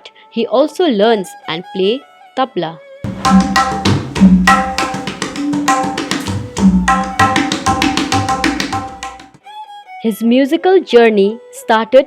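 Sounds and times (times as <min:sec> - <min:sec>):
tabla playing: 0:03.1 - 0:09.4.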